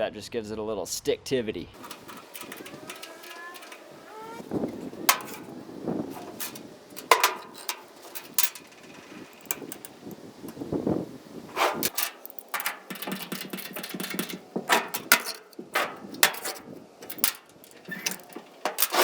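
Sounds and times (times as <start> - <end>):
knocks clunks and scrapes: 1.8 - 19.0.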